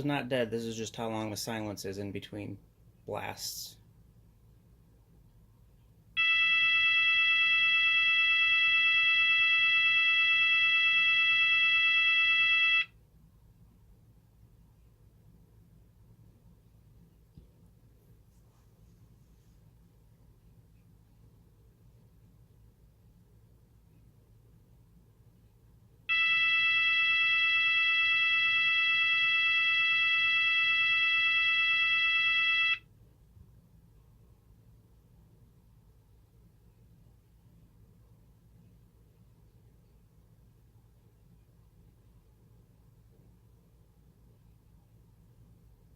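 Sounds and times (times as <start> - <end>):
fire alarm steady blast: 6.2 - 13.0, 26.1 - 32.8.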